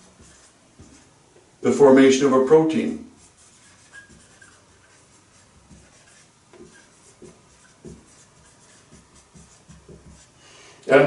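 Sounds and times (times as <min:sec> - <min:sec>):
pen scratching while writing: 0:00.0 - 0:01.1, 0:03.2 - 0:10.4.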